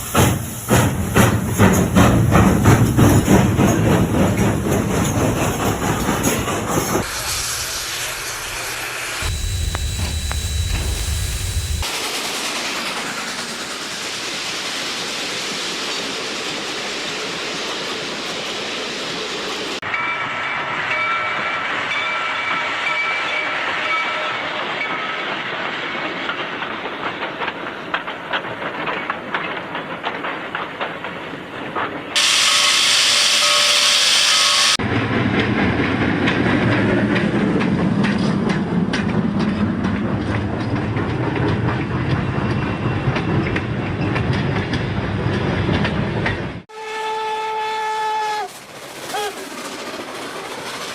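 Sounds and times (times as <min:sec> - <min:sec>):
train clickety-clack on rails: 0:00.0 - 0:07.1, 0:12.6 - 0:32.2, 0:34.8 - 0:46.6, 0:48.2 - 0:50.9
steam hissing: 0:05.9 - 0:19.8, 0:32.2 - 0:34.8
steam whistle blast: 0:32.2 - 0:34.8, 0:46.7 - 0:49.4.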